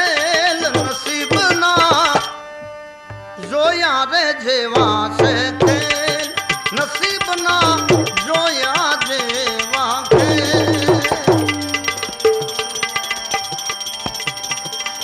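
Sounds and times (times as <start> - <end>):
tabla strokes: 0.0 - 3.5, 4.8 - 15.0
ornamented melody line: 4.8 - 15.0
held drone tones: 7.6 - 8.2.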